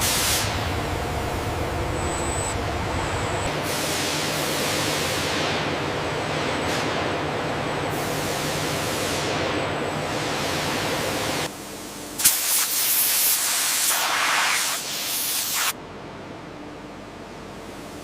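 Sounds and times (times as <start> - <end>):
loud steady hiss: 0.0 - 1.9, 12.2 - 15.8
steady machine noise: 0.0 - 6.4.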